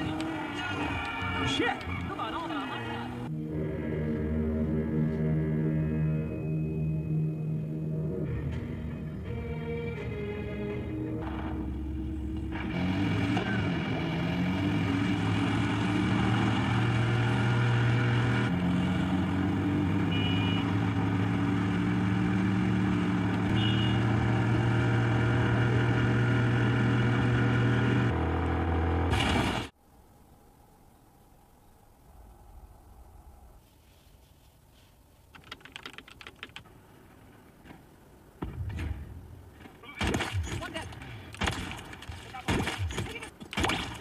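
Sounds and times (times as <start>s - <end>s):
vehicle engine droning: 0.0s - 30.8s.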